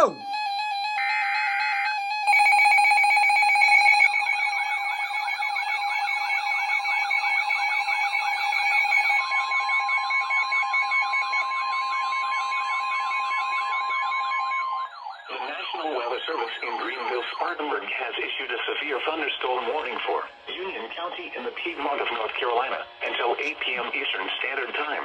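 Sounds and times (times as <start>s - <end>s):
warbling siren-like sweeps: 0.0s - 6.3s
rapidly pulsing beep tone: 0.0s - 25.0s.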